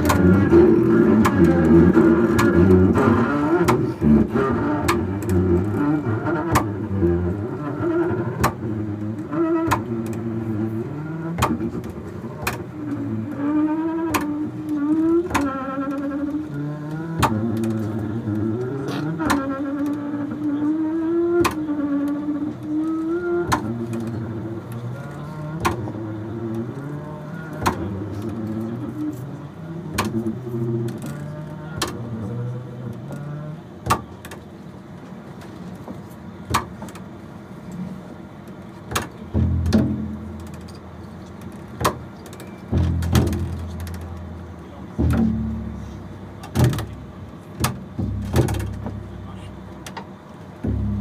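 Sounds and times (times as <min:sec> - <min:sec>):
double bass droning notes: 0:00.0 - 0:51.0
sharp snapping knocks: 0:06.3 - 0:06.8, 0:11.4 - 0:12.7, 0:17.2 - 0:17.8, 0:27.6 - 0:27.9, 0:30.0 - 0:30.3, 0:33.8 - 0:34.4, 0:36.5 - 0:37.0, 0:38.9 - 0:40.8, 0:41.4 - 0:44.2, 0:46.4 - 0:49.2
sharp knock: 0:45.0 - 0:47.0, 0:47.6 - 0:49.2.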